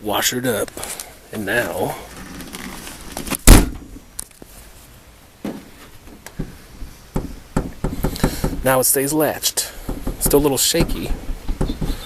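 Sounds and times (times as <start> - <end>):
car hatch slamming shut: 3.4 - 3.9
light knocks: 9.8 - 12.0.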